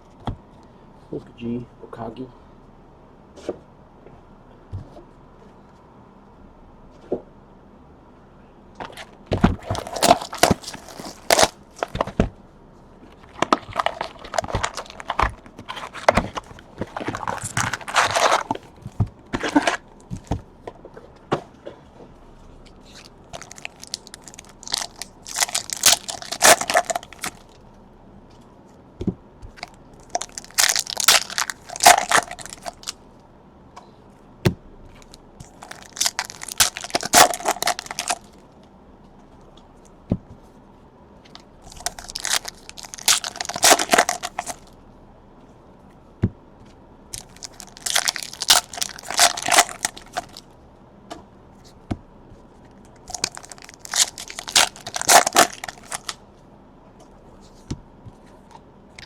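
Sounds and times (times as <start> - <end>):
wrappers crinkling and tearing: 9.6 - 12.0, 13.2 - 18.7, 22.8 - 27.6, 29.6 - 33.0, 35.0 - 38.4, 41.7 - 44.7, 47.2 - 50.4, 53.0 - 56.2.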